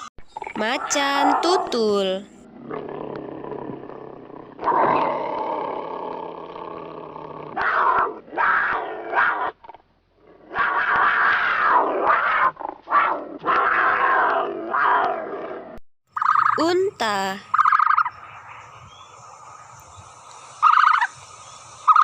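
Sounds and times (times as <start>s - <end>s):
leopard raspy calls: 7.5s - 15.1s, 16.2s - 16.7s, 17.4s - 18.6s, 20.6s - 21.2s.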